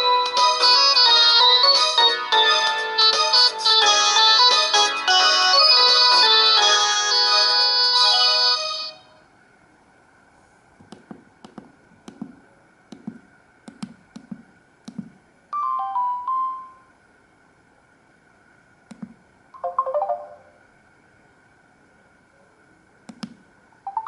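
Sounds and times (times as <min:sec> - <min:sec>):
ringtone: 0:00.0 - 0:09.1, 0:15.5 - 0:16.9, 0:19.6 - 0:20.5.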